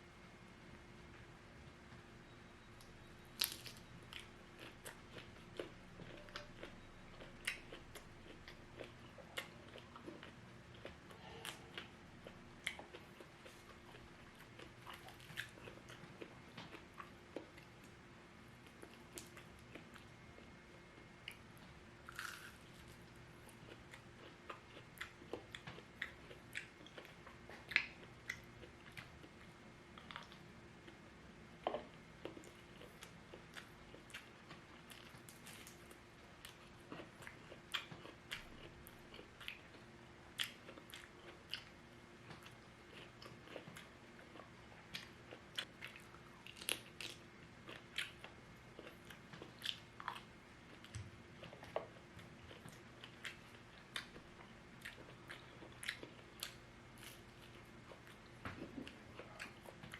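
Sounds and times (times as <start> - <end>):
crunchy bites and chewing: 3.3 - 17.7, 22.0 - 28.0.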